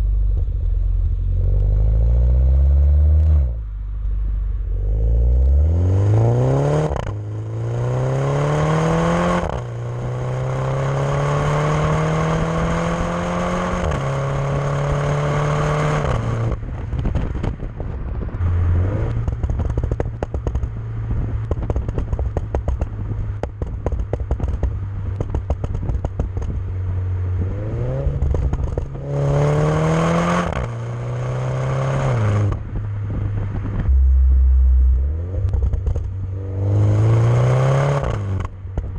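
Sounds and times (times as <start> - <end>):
exhaust crackling and popping: 0.0 - 7.4, 15.9 - 29.4, 30.2 - 38.9
car engine accelerating hard: 4.6 - 17.5, 18.2 - 38.9.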